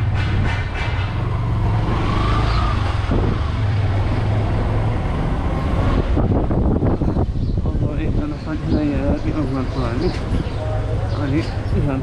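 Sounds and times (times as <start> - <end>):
road and wind noise: 0.0 - 12.0.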